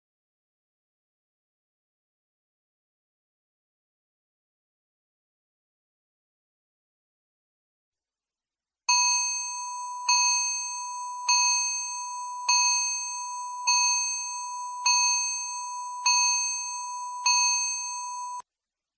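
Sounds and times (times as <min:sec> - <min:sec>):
bell-like timer alarm ringing: 0:08.9 - 0:18.4.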